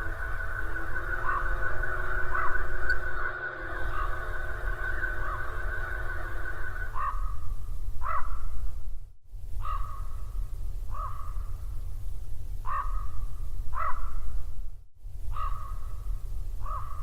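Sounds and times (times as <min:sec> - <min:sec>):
steady low rumble: 0:00.0 - 0:08.0.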